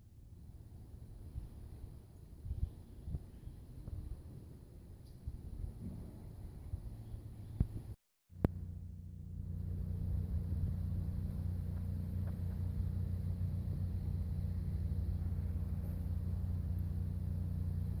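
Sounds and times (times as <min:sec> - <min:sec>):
van engine rumbling: 0:08.3 - 0:18.0.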